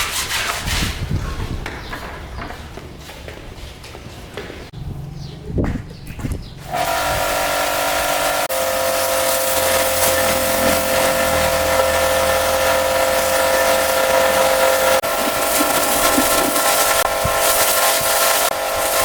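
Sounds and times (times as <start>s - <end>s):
cleaning machine motor whining: 6.7s - 19.0s
hiss of air or water: 6.8s - 19.0s.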